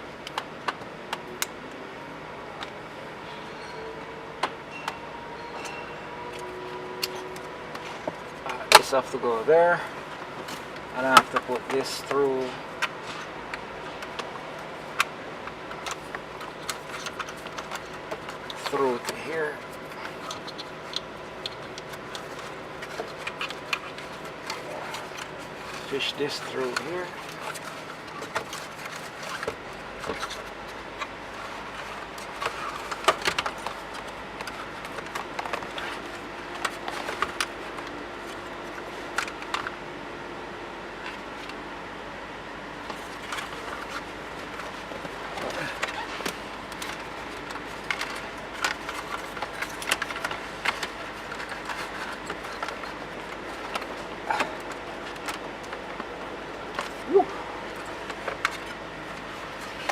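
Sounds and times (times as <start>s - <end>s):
clicks and rustles of trim: 10.1s - 39.8s, 42.8s - 59.9s.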